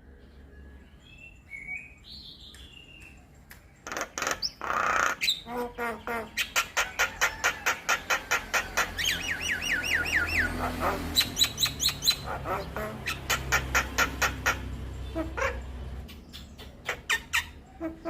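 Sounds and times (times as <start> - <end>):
myna clicking song: 2.4 - 4.5.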